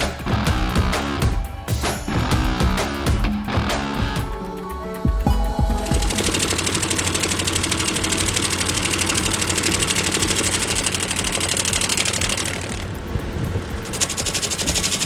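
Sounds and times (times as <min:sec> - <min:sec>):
machine engine running with rattle: 0:05.7 - 0:15.0.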